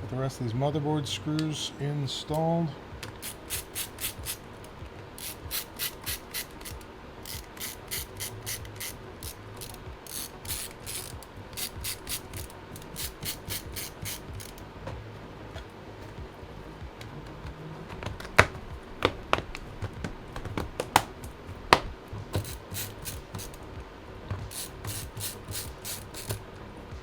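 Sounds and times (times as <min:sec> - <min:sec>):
screwdriver ratcheting clicks: 0:03.0 - 0:04.4, 0:05.2 - 0:14.6, 0:22.4 - 0:23.6, 0:24.4 - 0:26.4.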